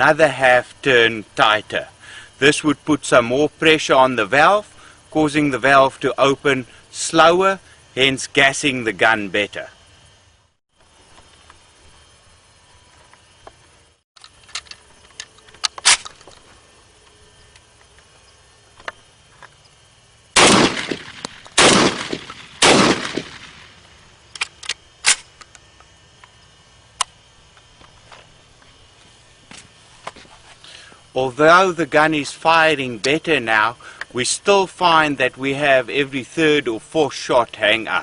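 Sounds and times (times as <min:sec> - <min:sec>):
shotgun shots: 0:20.4 - 0:23.8.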